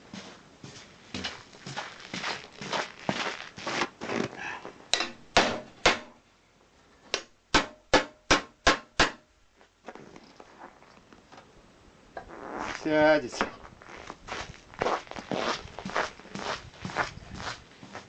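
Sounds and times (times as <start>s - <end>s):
hammer striking metal: 4.9s - 6.2s, 7.1s - 9.2s.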